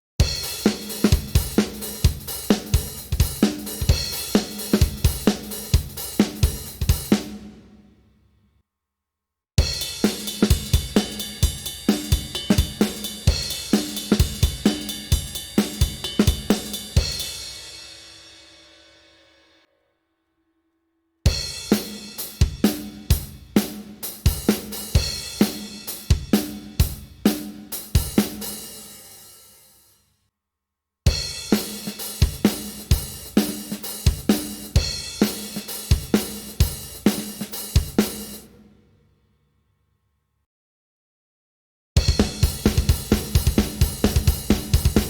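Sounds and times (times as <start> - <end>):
snare drum: 0.2 - 7.8, 9.6 - 17.4, 31.1 - 38.6, 42.0 - 45.0
kick drum: 42.0 - 45.0.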